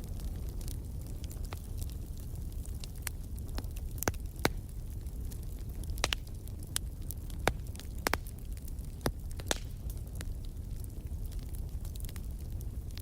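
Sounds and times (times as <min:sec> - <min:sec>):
logs crackling and popping: 0:00.0 - 0:13.0
low rumble of flames: 0:00.0 - 0:13.0.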